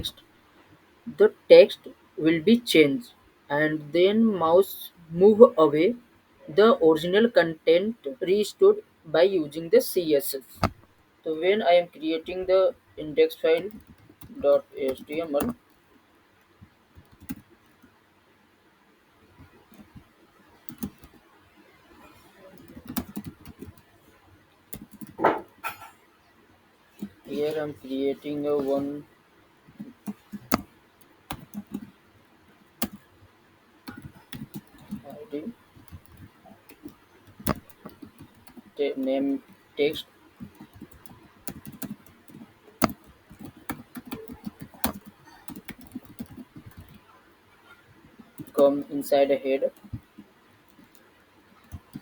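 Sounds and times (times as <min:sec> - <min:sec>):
computer keyboard typing: 0:13.0 - 0:15.6, 0:16.9 - 0:17.9, 0:19.4 - 0:21.2, 0:22.4 - 0:23.9, 0:24.7 - 0:25.2, 0:27.0 - 0:29.0, 0:29.7 - 0:32.0, 0:32.8 - 0:33.1, 0:33.8 - 0:52.0.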